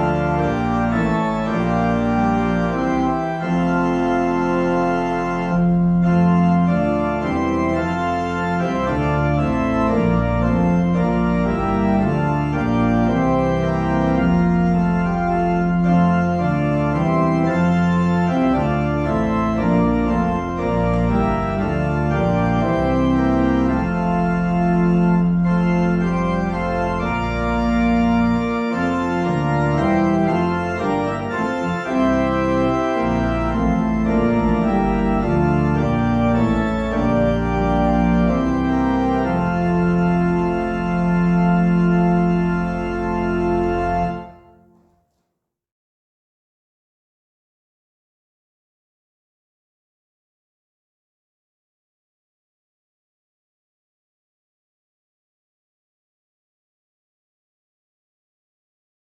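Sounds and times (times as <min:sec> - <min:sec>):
church organ chords: 0:00.0 - 0:44.9.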